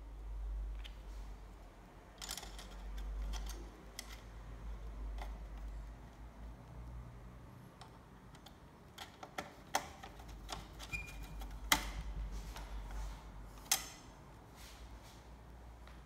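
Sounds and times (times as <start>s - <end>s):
small parts clicking and tapping: 0.2s - 7.0s, 7.6s - 12.7s.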